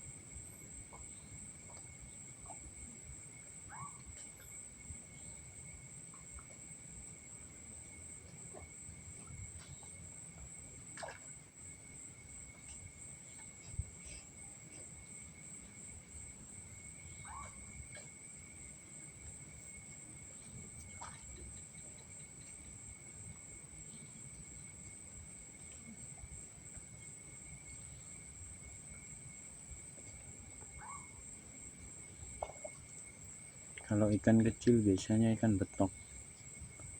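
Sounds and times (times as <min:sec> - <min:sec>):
crickets high-pitched trill: 0:00.0 - 0:36.9
lower insect trill: 0:00.0 - 0:36.9
short insect calls: 0:00.0 - 0:36.9.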